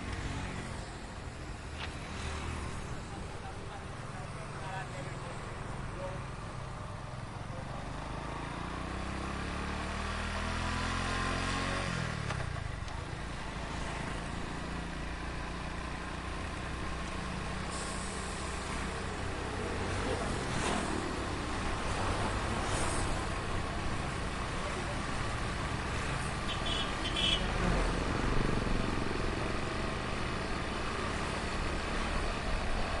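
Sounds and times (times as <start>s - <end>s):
heavy street traffic: 0.0s - 33.0s
road noise: 0.0s - 33.0s
engine revving: 8.1s - 12.5s.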